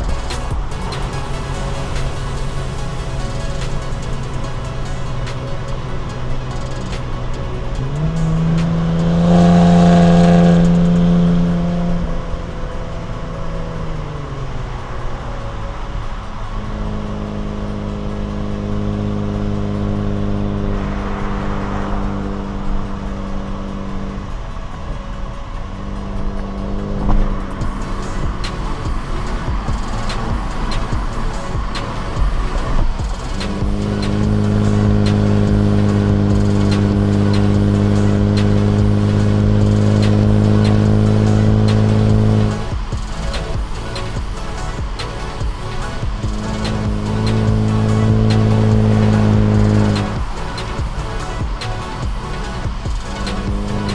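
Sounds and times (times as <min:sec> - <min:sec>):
background music with beat: 0:00.0 - 0:53.9
car exhaust droning while cruising: 0:00.0 - 0:53.9.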